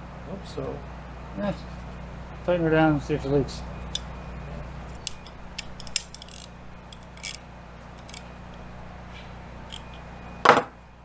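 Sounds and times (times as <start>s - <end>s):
metallic hand tool clicks: 5.0s - 7.4s.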